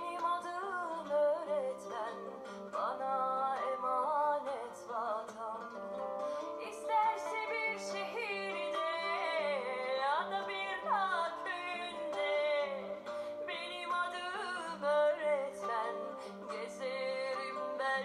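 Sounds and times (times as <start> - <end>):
plucked guitar: 0.0 - 18.0
person singing with vibrato: 6.4 - 18.0.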